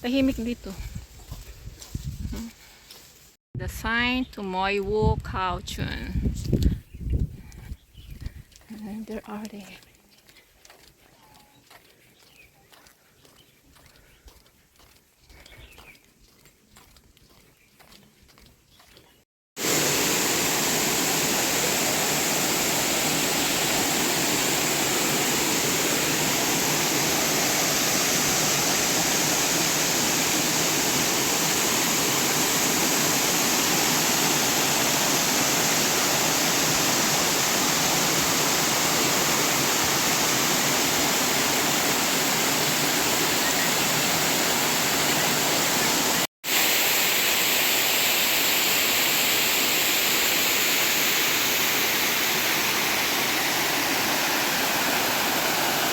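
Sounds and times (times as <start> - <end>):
waterfall rushing: 19.6 - 55.9.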